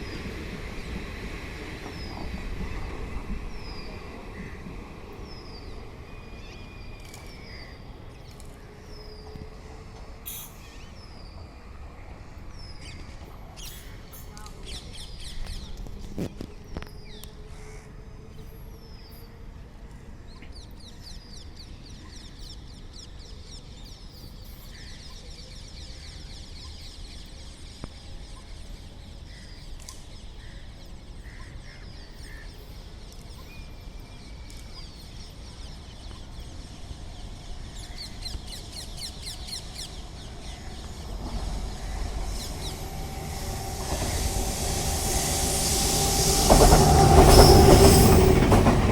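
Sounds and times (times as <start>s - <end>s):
train rumbling: 0.0s - 20.2s, 32.7s - 48.9s
birds chirping: 36.2s - 48.9s.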